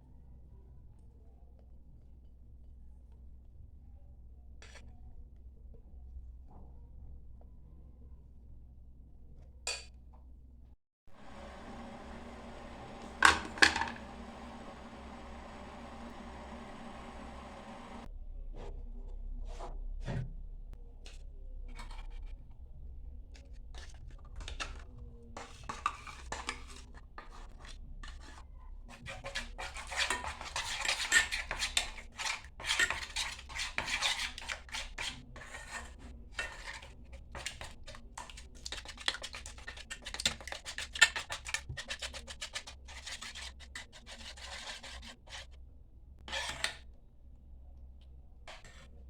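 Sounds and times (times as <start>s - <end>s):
utensils clinking and scraping dish: 11.4s - 18.1s, 28.9s - 43.2s.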